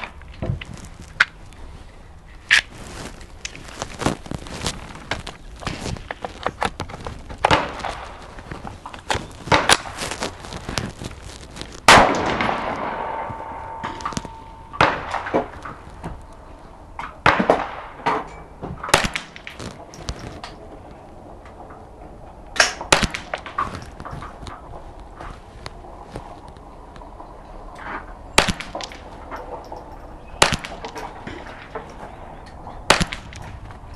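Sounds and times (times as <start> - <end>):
gunshots: 11.9 - 15.4, 18.9 - 19.4, 32.9 - 33.4.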